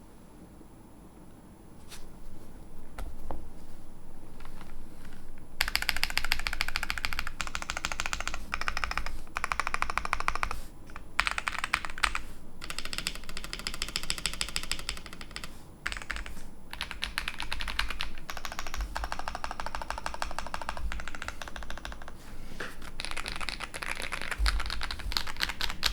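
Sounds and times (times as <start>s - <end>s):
mechanical keyboard typing: 5.6s - 22.2s, 22.8s - 25.9s.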